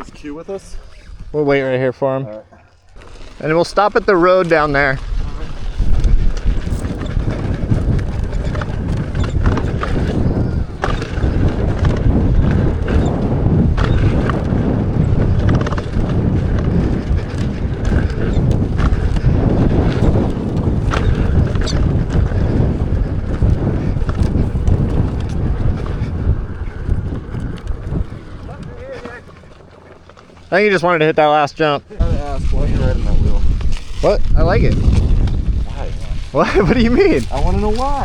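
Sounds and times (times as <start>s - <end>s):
wind buffeting microphone: 0.0s - 38.0s
tyre rumbling over dirt trail: 2.5s - 38.0s
clicks and knocks of rattling gear: 4.5s - 30.8s.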